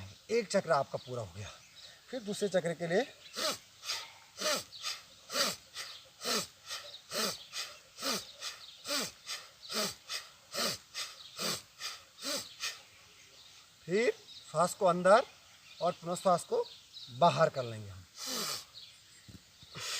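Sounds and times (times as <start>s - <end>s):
forceful breathing through nose: 3.4s - 12.8s, 18.2s - 18.8s.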